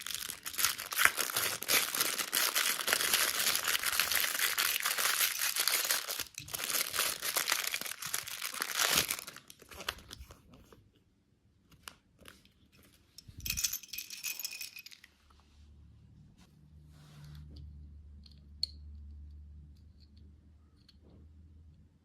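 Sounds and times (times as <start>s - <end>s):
plastic wrapper crinkling and tearing: 0.0s - 10.3s.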